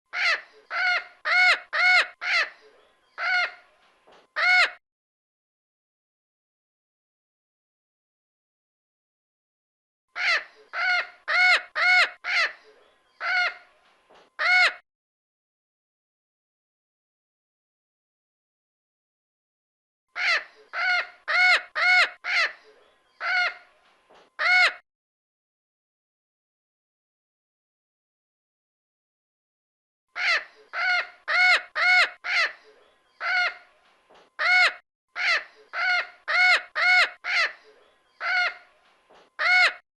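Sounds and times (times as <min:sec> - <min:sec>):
parrot squawking: 0:00.1 - 0:02.6, 0:03.2 - 0:03.6, 0:04.4 - 0:04.8, 0:10.2 - 0:12.6, 0:13.2 - 0:13.7, 0:14.4 - 0:14.8, 0:20.2 - 0:22.6, 0:23.2 - 0:23.7, 0:24.4 - 0:24.8, 0:30.2 - 0:32.6, 0:33.2 - 0:33.7, 0:34.4 - 0:38.7, 0:39.4 - 0:39.8.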